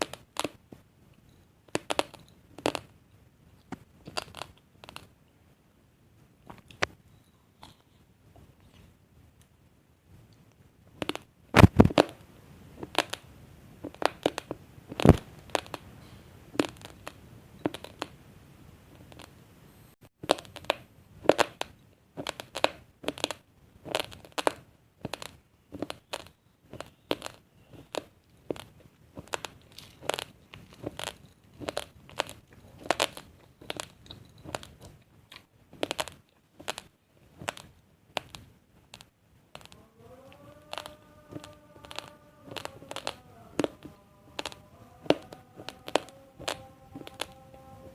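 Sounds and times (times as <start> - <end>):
rice grains crunched by teeth: 0.0 - 0.6, 1.7 - 2.9, 4.0 - 5.1, 11.0 - 12.2, 12.8 - 15.8, 16.6 - 18.2, 20.2 - 47.9.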